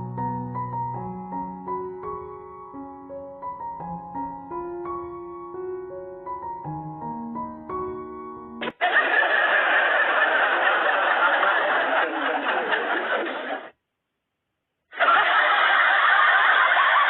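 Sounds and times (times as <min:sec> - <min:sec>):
soft piano music: 0:00.0 - 0:08.6
laughing sound effect: 0:08.6 - 0:13.7, 0:14.9 - 0:17.0.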